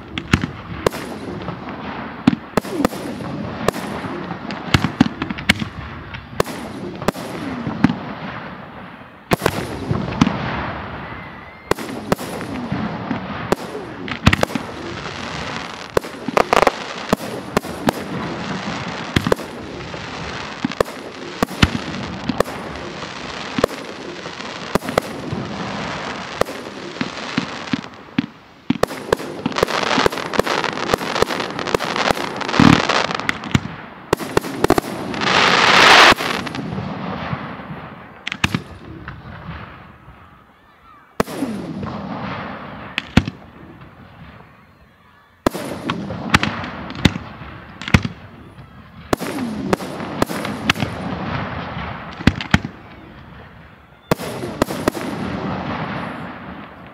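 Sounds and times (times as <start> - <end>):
fireworks crackle: 0.0 - 40.4, 45.4 - 56.9.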